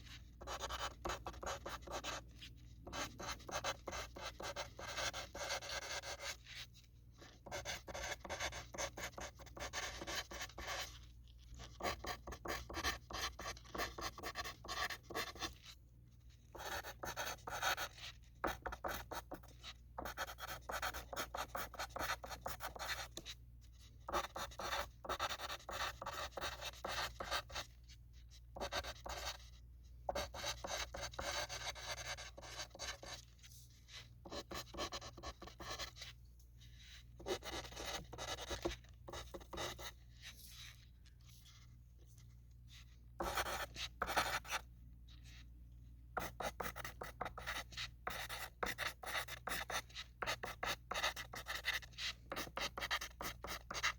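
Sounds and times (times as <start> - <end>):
pencil writing on paper: 0.0 - 27.8, 28.5 - 41.7, 42.7 - 44.6, 46.2 - 53.9.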